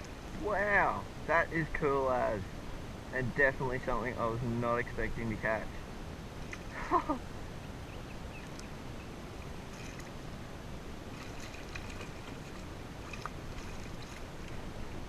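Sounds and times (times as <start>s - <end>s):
small splashes and drips: 9.4s - 10.2s, 11.1s - 14.6s
water lapping against kayak hull: 11.1s - 15.0s.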